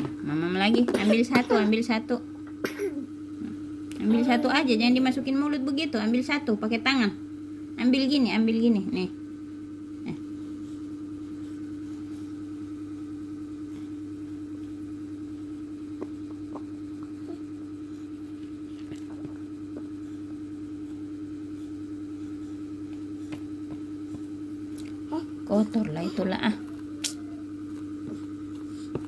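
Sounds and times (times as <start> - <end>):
low mechanical hum: 0.0 - 29.0.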